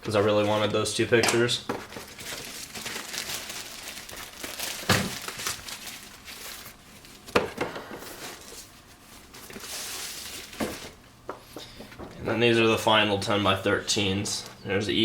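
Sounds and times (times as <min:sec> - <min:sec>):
paper and packaging rustling: 0:00.0 - 0:07.4, 0:08.0 - 0:11.0.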